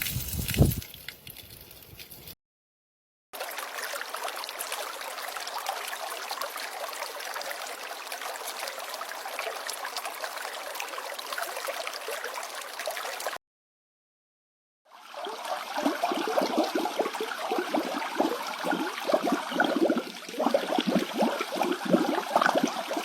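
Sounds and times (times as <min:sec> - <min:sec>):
running water trickling: 0:00.0 - 0:02.4, 0:03.4 - 0:13.4, 0:15.2 - 0:23.0.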